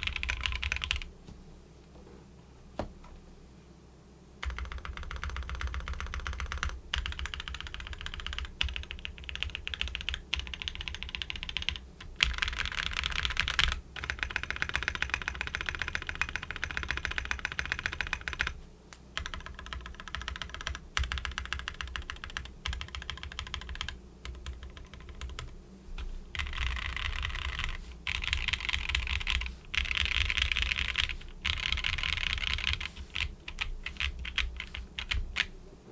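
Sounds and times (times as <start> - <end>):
mechanical keyboard typing: 0.0 - 1.1, 4.4 - 18.6, 19.2 - 25.5, 26.4 - 35.5.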